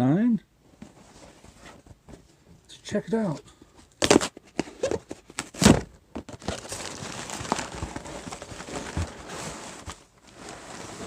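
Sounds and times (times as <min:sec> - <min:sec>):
packing rustling and crinkling: 0:04.0 - 0:11.0.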